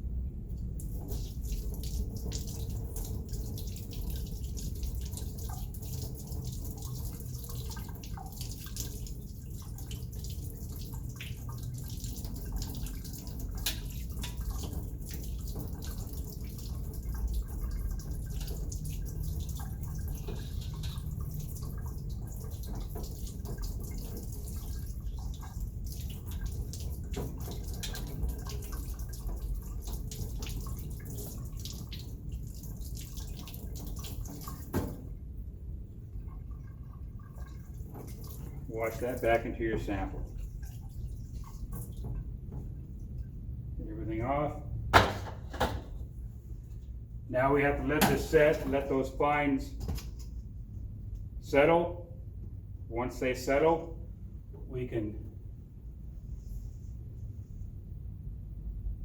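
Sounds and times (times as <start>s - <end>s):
water drips and splashes: 0.5s - 43.8s, 47.6s - 49.1s
running water: 0.7s - 35.1s, 36.0s - 43.3s.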